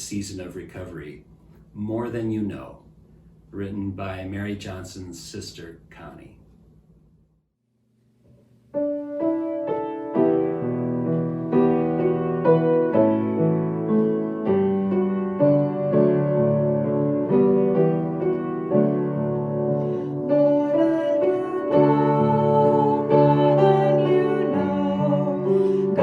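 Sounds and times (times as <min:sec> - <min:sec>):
piano chords: 0:08.7 - 0:26.0.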